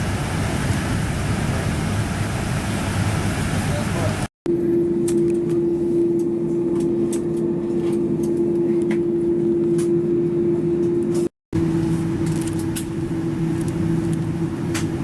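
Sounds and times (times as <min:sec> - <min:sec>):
aircraft cabin hum: 0:00.0 - 0:15.0.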